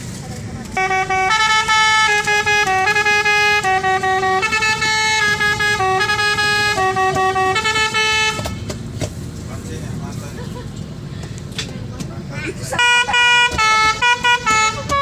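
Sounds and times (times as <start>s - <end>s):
bus air horns playing melody: 0.7s - 8.8s, 12.6s - 15.0s.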